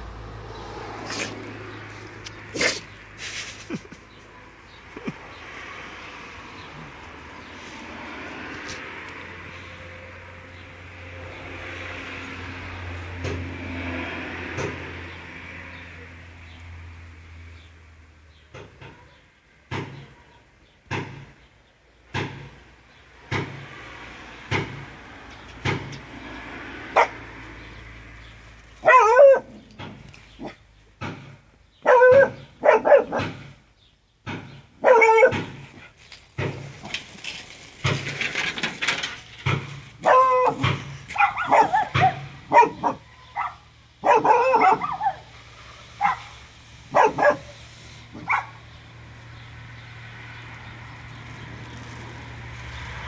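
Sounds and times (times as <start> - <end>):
dog sneezing: 1.0 - 1.4, 2.5 - 3.8
dog barking and yipping: 26.9 - 27.2, 28.8 - 29.7, 31.8 - 33.4, 34.8 - 35.6, 40.0 - 45.3, 46.0 - 48.6.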